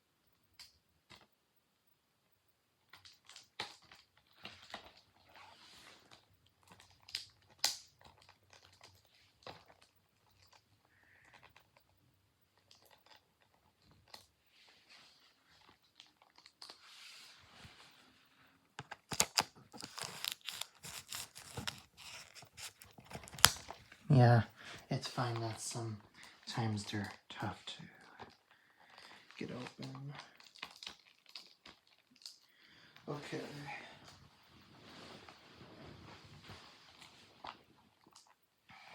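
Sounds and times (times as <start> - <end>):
plastic wrap crinkling and tearing: 2.9 - 10.6, 14.9 - 17.7, 18.8 - 24.4, 25.1 - 38.4.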